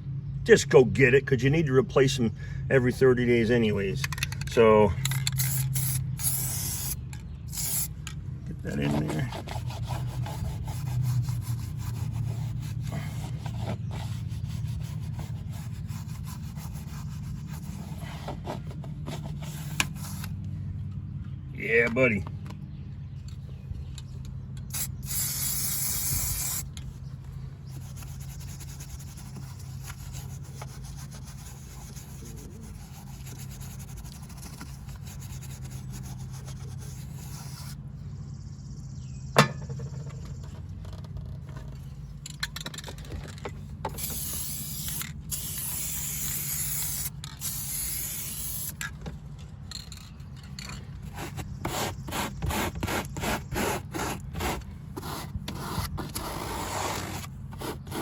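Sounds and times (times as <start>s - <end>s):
aerosol spray can hissing: 5.4s - 7.9s, 24.7s - 26.6s, 44.0s - 48.7s.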